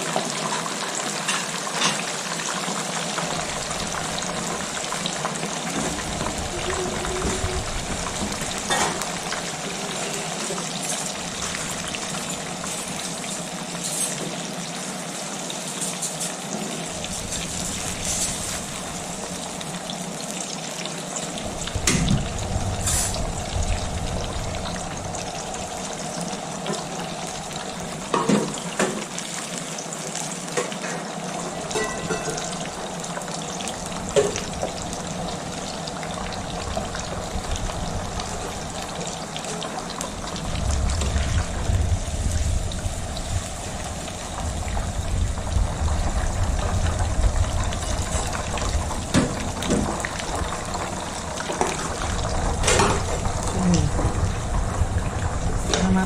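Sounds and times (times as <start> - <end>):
food sizzling in a pan: 0.0 - 56.0.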